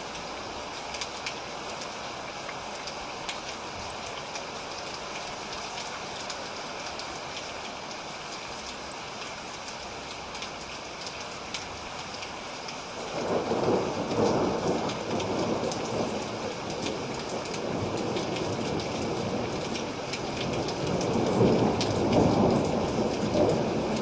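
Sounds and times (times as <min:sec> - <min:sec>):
steady rain falling: 0:00.0 - 0:24.0
low thunder rumble: 0:13.1 - 0:19.6.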